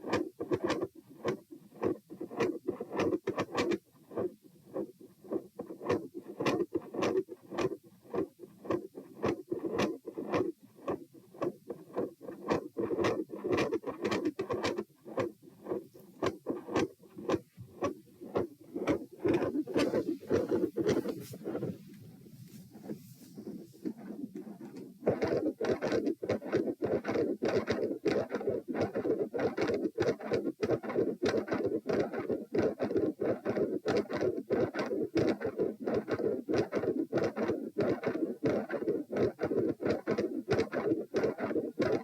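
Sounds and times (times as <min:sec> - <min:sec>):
heartbeats: 0:15.2 - 0:25.8.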